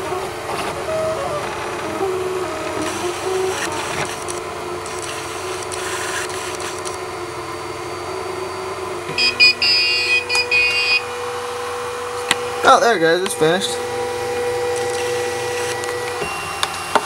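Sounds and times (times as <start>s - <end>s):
steady machine hum: 0.0s - 17.0s
stepper motors whining: 0.0s - 17.0s
high electronic beeps: 9.2s - 11.1s.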